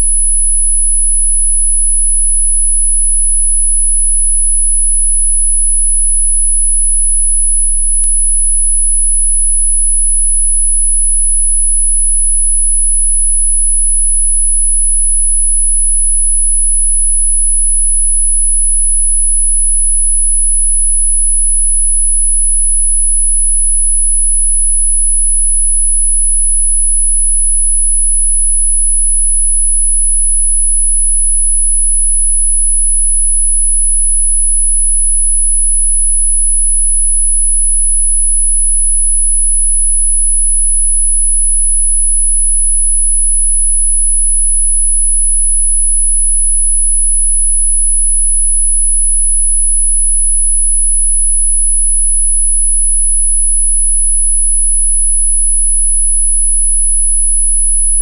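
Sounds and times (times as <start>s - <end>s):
high-pitched sine tone: 0.0s - 58.0s.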